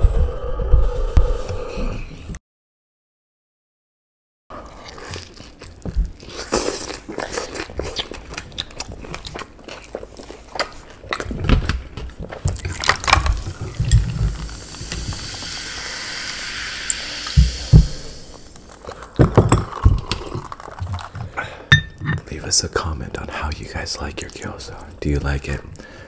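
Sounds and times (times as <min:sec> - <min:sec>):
crisp chewing crunches: 0:04.6 - 0:14.6, 0:18.5 - 0:21.5
steady hiss: 0:13.4 - 0:18.9.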